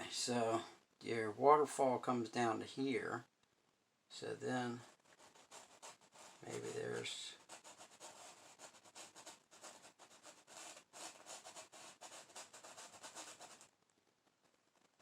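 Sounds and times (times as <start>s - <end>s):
paintbrush scrubbing on canvas: 4.6s - 13.7s.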